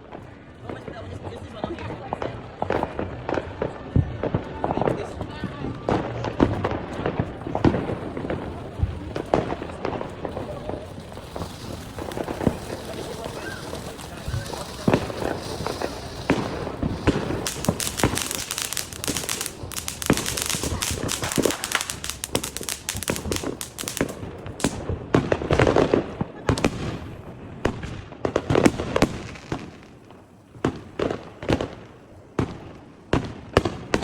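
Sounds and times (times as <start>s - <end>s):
fireworks crackling and banging: 0.0s - 34.0s.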